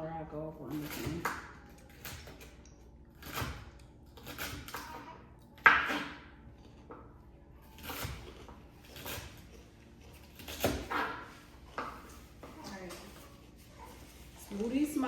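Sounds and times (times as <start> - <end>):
knife chopping celery on board: 5.6 - 6.3, 10.4 - 12.2.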